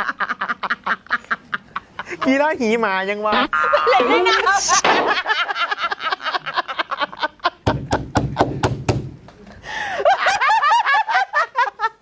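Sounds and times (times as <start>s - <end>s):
person laughing: 3.3s - 8.6s
breathy gasps: 9.6s - 10.0s.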